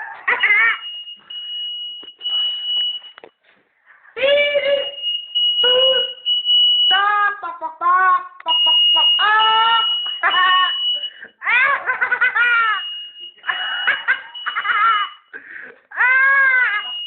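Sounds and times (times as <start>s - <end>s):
person laughing: 0.0s - 0.9s, 6.9s - 17.0s
smoke alarm high-pitched tone: 0.3s - 3.2s, 4.6s - 7.2s, 8.4s - 15.4s, 16.1s - 17.0s.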